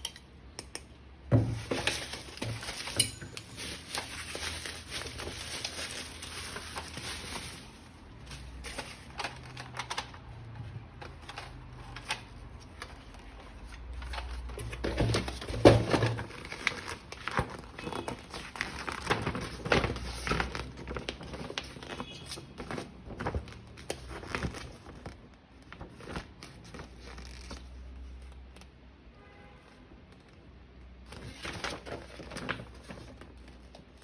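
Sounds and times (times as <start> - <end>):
plastic packaging crinkling: 1.4 - 28.2.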